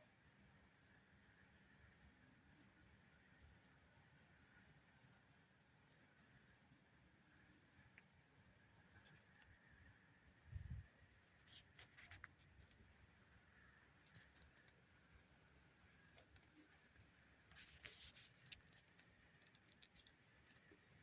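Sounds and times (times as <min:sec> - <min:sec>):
insect trill: 0:00.0 - 0:21.0.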